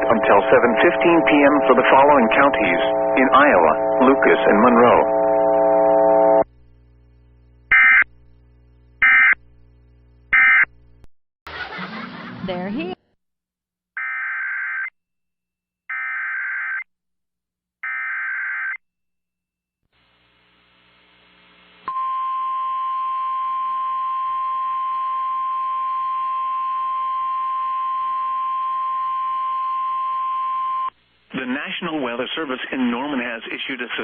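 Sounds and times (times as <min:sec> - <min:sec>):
steady single-pitch alert tone: 0:00.0 - 0:06.4.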